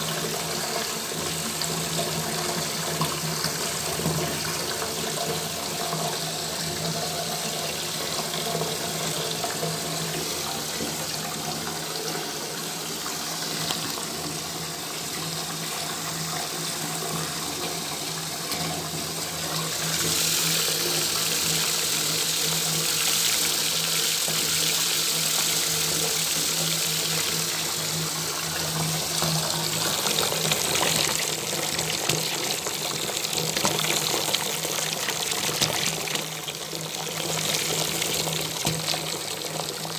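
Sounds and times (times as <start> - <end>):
water pouring into bathtub: 0.0 - 39.9.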